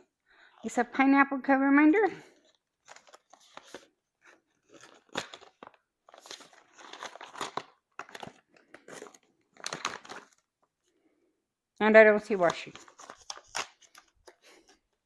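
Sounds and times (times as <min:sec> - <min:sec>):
plastic and paper crinkling: 0:02.2 - 0:10.6, 0:12.2 - 0:15.0.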